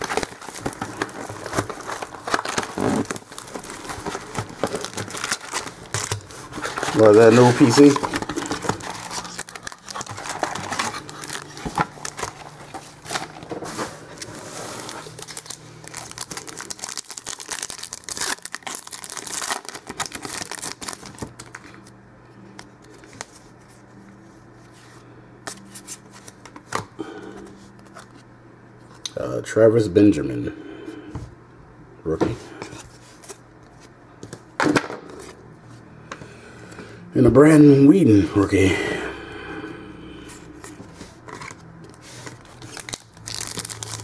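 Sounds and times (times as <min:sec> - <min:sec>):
wrapper tearing and crinkling: 0:00.0 - 0:21.7, 0:41.3 - 0:44.0.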